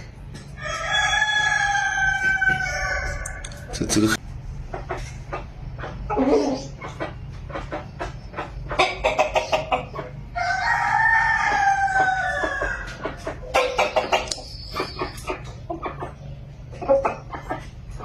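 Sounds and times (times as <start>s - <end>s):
chickens clucking: 0.0s - 18.0s
rooster crowing: 0.6s - 3.5s, 10.4s - 12.9s.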